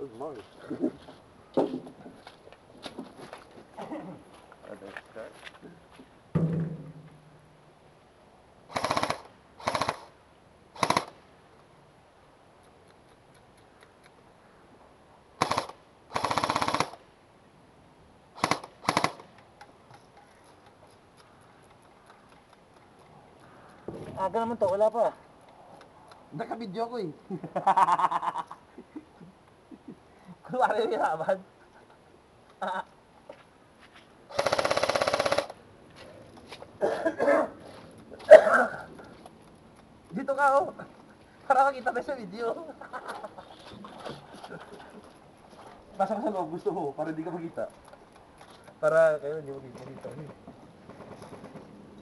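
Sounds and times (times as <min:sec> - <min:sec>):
airsoft rifle firing bursts: 0:08.7 - 0:10.1, 0:10.8 - 0:11.2, 0:15.4 - 0:17.0, 0:18.4 - 0:19.3, 0:34.3 - 0:35.6
faint scattered clicks: 0:12.6 - 0:14.3, 0:18.6 - 0:23.9, 0:47.6 - 0:52.0.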